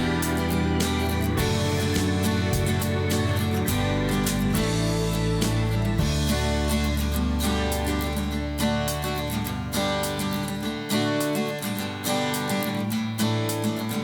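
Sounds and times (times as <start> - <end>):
steady bass line: 0.0 - 10.0
strummed acoustic guitar: 0.0 - 14.0.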